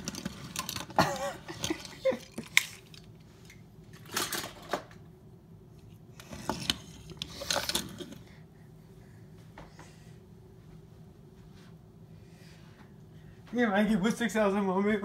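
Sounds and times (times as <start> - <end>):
small hard objects clattering: 0.0 - 3.1.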